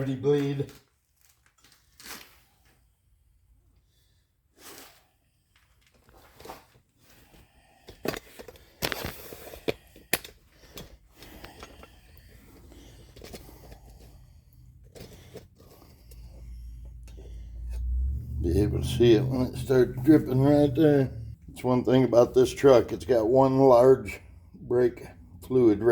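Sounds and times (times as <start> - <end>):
clicks and knocks of tools: 7.9 - 14.1.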